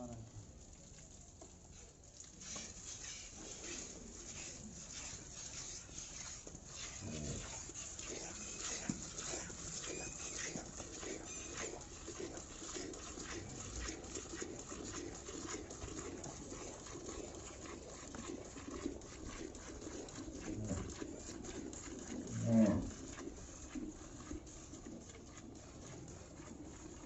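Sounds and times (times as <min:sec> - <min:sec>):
milk squirting into pail: 0:00.8 - 0:27.0
low cow call: 0:22.3 - 0:23.0.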